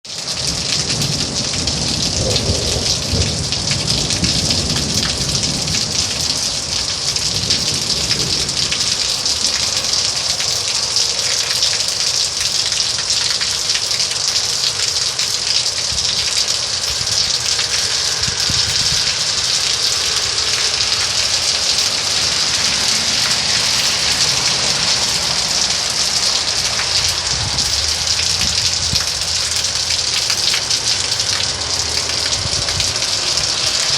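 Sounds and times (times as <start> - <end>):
heavy rainfall: 0.0 - 33.9
low rumbling: 15.6 - 33.9.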